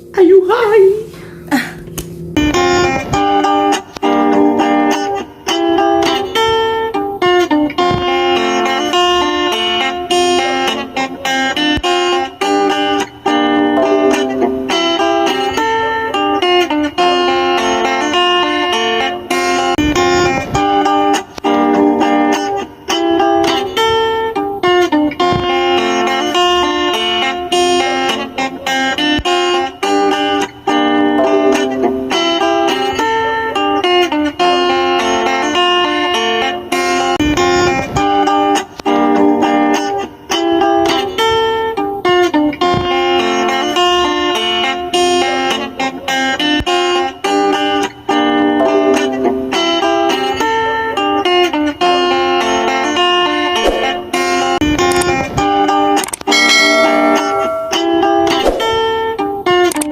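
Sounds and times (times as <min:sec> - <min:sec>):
guitar plucked and strummed: 0:00.0 - 0:59.9.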